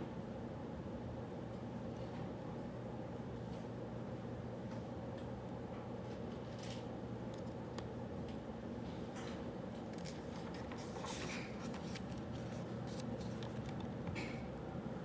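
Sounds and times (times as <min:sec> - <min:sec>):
room hum: 0:00.0 - 0:15.0.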